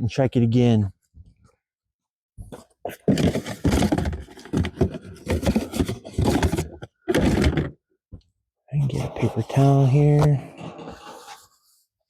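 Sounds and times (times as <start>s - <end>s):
plastic lids scraping and knocking: 2.5s - 7.8s.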